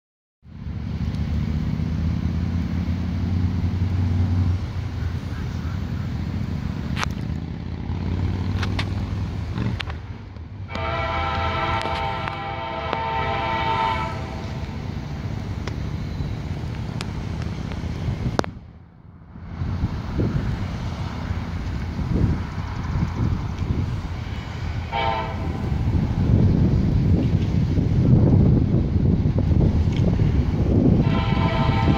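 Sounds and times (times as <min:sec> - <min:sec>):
diesel locomotives rumbling: 0:00.4 - 0:31.9
wind buffeting microphone: 0:01.7 - 0:31.9
train air horn chord: 0:10.7 - 0:14.8, 0:24.8 - 0:26.4, 0:31.0 - 0:31.9.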